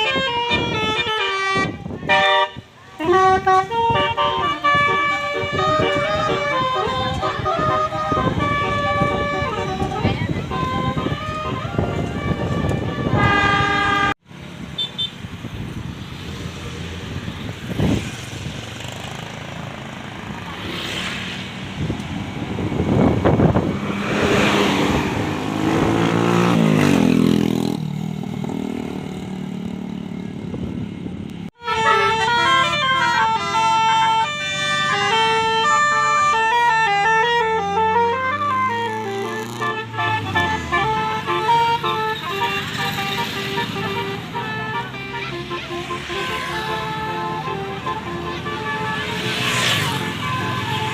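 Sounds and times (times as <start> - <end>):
multi-tone bus horn melody: 0.0 - 14.2, 31.6 - 50.9
bus engine: 0.0 - 50.9
traffic noise: 0.0 - 50.9.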